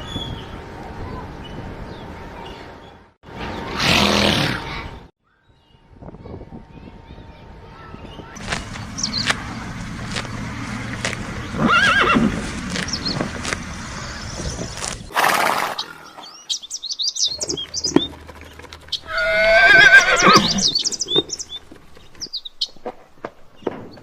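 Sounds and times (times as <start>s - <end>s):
horse whinnying: 11.6s - 12.3s, 19.0s - 20.9s.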